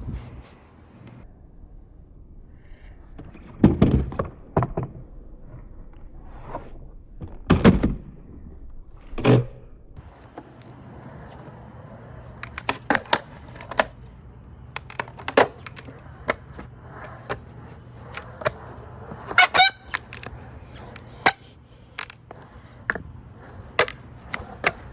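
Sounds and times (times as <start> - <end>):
steady low hum: 9.9 - 24.9
heavy skateboard knocks: 10.0 - 14.0, 14.7 - 24.9
skateboard clacking on concrete: 10.0 - 24.9.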